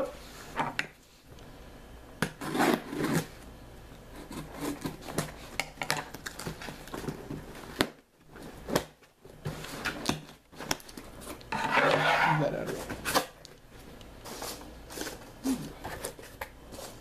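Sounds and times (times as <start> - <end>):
packaging rustling and scraping: 4.1 - 17.0.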